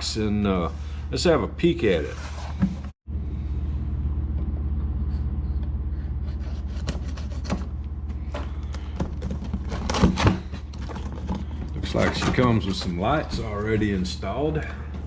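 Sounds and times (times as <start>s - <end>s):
steady low hum: 0.0s - 15.0s
cardboard rustling and handling: 6.6s - 14.7s.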